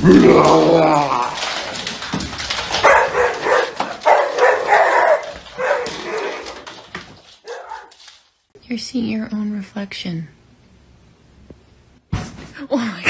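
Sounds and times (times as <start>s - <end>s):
dog barking and whining: 2.6s - 8.1s.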